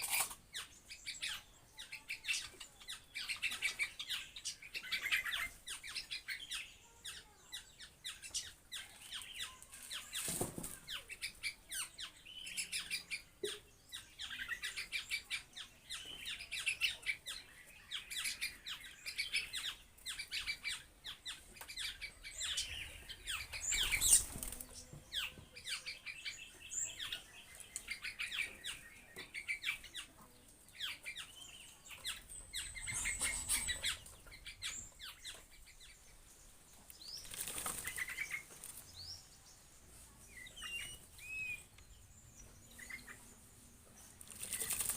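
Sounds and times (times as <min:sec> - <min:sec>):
birds chirping: 0:00.0 - 0:44.9
wing flapping: 0:37.2 - 0:38.8, 0:44.2 - 0:44.9.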